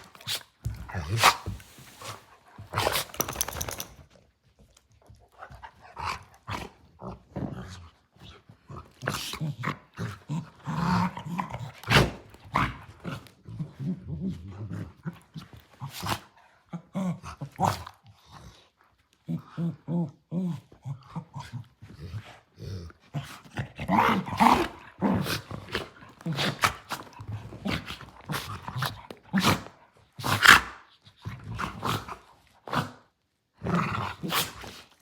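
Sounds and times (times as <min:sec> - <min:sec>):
dogs growling low: 0:05.8 - 0:29.8.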